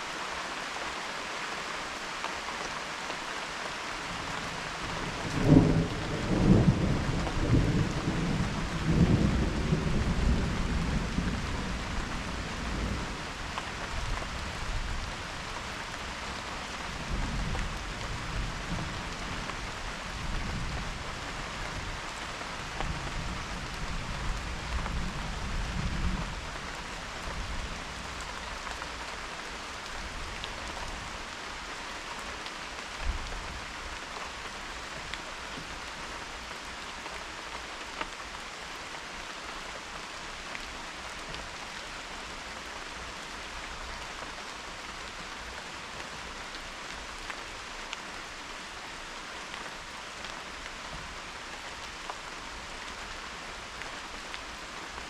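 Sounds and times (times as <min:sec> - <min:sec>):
steady rain falling: 0:00.0 - 0:55.0
low rumble of thunder: 0:04.9 - 0:15.5.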